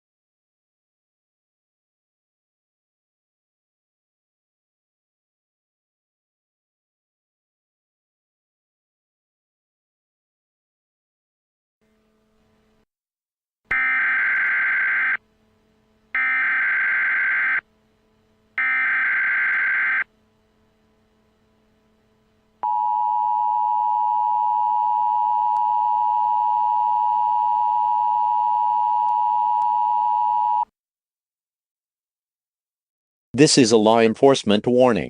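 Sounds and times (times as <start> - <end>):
warbling digital header bursts: 18.6 - 20.0
steady two-tone attention signal: 18.6 - 20.2, 22.6 - 30.7.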